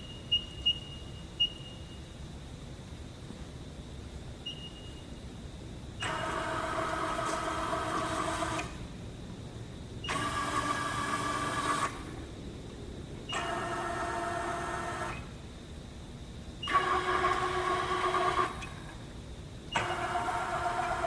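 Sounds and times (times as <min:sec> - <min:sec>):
milling machine whine: 0:04.9 - 0:21.0.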